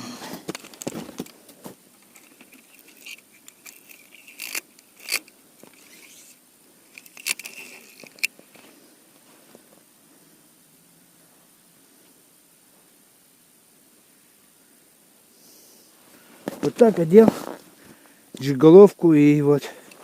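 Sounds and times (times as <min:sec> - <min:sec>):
faint high whine: 0:00.0 - 0:20.0
handling scrapes and rustles: 0:00.3 - 0:09.9, 0:16.0 - 0:18.0.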